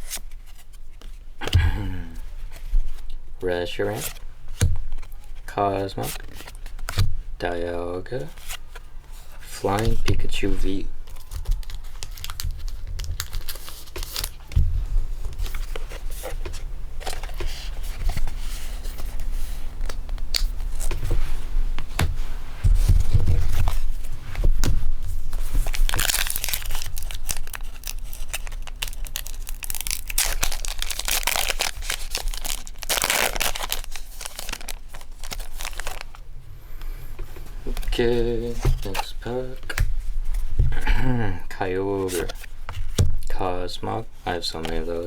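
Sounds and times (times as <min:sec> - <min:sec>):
foil wrappers crinkling and tearing: 0:10.6 - 0:14.6, 0:25.3 - 0:36.2.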